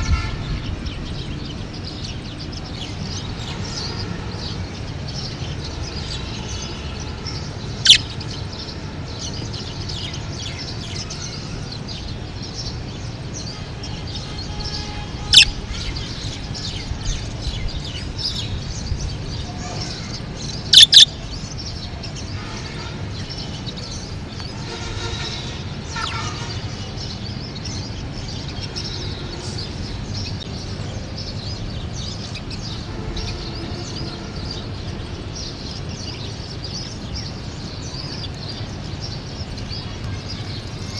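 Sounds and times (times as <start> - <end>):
loud sharp bird calls: 0.0 - 40.9
budgerigars twittering: 2.1 - 11.6, 13.4 - 21.5.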